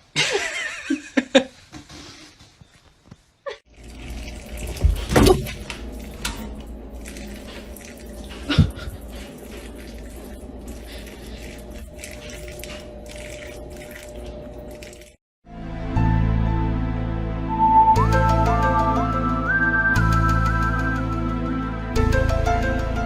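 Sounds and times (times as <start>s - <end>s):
background noise: 0.0s - 3.6s.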